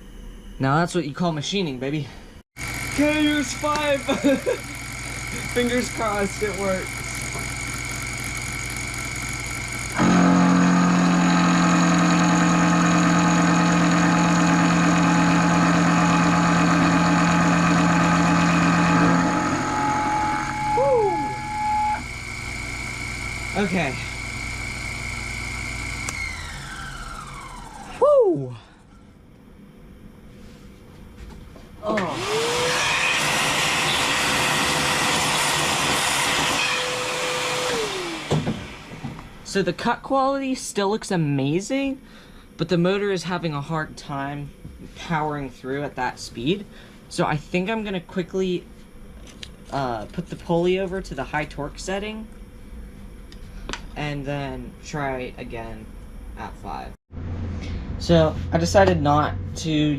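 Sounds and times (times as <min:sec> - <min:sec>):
end mill cutting steel: 0:02.6 - 0:27.9, 0:32.0 - 0:39.4
spindle motor running: 0:02.6 - 0:28.1, 0:31.8 - 0:39.6.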